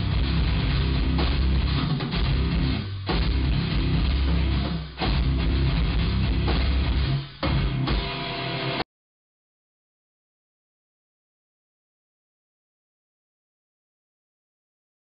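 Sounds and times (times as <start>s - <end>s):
heavy metal music: 0.0s - 8.8s.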